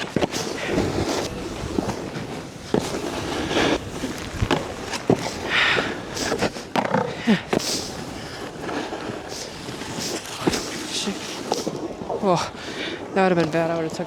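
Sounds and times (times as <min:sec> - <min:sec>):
snowboard scraping over snow: 0:00.0 - 0:11.8.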